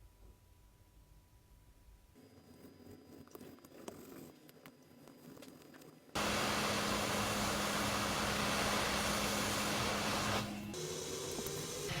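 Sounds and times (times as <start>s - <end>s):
hot-air station blowing: 6.2s - 12.0s.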